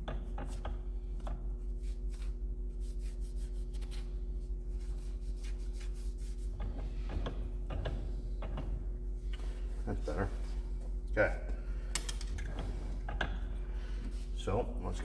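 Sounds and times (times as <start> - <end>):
steady low hum: 0.0 - 15.0
rubbing and scraping strokes: 1.6 - 10.7.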